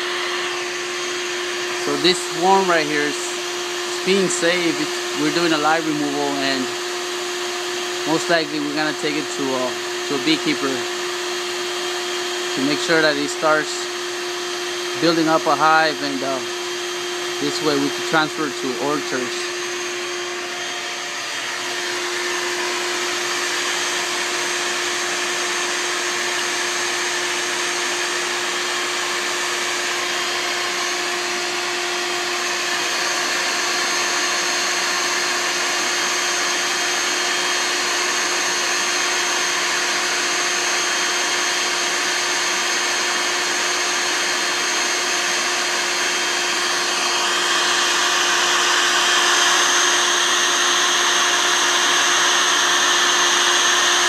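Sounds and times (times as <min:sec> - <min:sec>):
vacuum airy rush and hum: 0:00.0 - 0:24.2.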